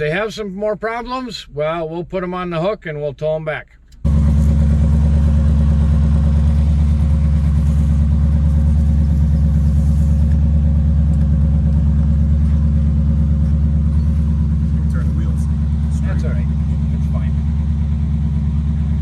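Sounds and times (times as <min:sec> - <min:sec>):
vehicle engine droning: 0:04.0 - 0:19.0.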